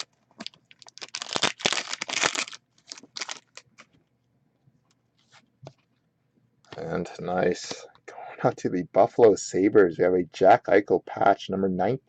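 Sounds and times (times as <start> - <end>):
wrapper tearing and crinkling: 0.0 - 3.8.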